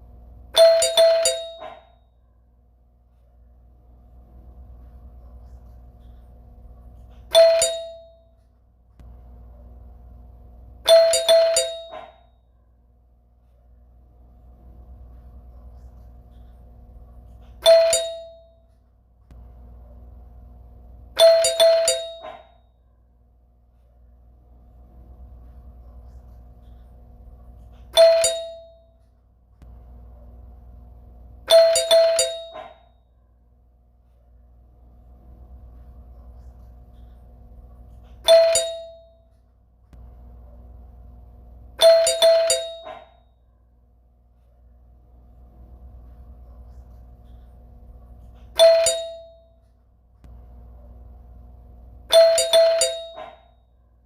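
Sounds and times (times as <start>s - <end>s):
steady low hum: 0.0s - 54.0s
doorbell chime: 0.5s - 1.9s, 7.3s - 8.4s, 10.8s - 12.2s, 17.6s - 18.7s, 21.2s - 22.5s, 28.0s - 29.0s, 31.5s - 32.8s, 38.3s - 39.3s, 41.8s - 43.3s, 48.6s - 49.6s, 52.1s - 53.6s.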